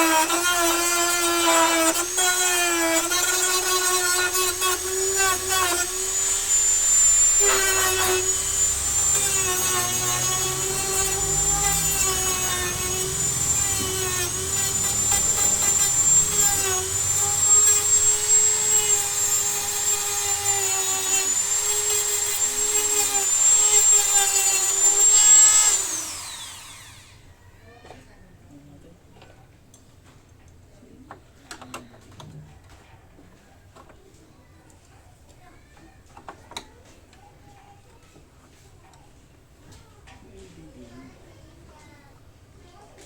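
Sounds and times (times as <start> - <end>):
rotary tool high-pitched whine: 0.0 - 27.3.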